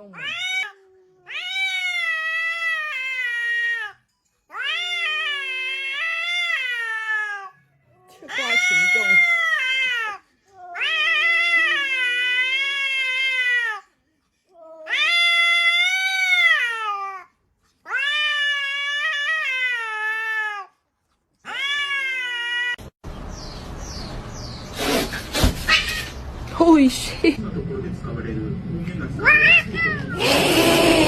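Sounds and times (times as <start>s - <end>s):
cat yowling: 0.0s - 7.6s, 8.2s - 13.9s, 14.6s - 20.8s, 21.4s - 22.9s, 25.7s - 26.1s, 29.2s - 31.0s
burst of rough noise: 30.2s - 31.0s.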